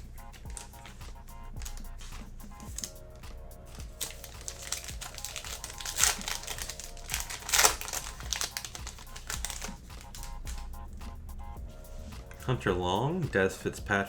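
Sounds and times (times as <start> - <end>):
wrapper crinkling and tearing: 0.0 - 10.7.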